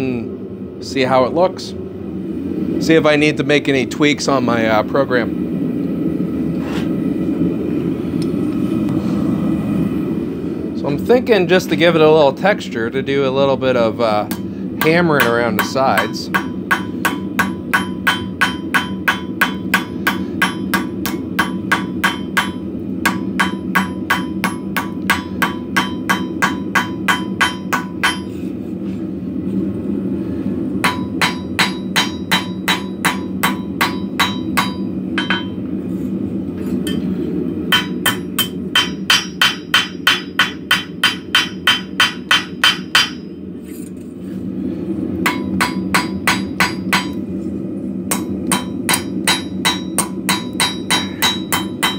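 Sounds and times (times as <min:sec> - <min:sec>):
hammer striking metal on anvil: 0:14.3 - 0:28.4, 0:30.8 - 0:35.6, 0:37.7 - 0:43.3, 0:45.2 - 0:47.2, 0:48.1 - 0:51.9.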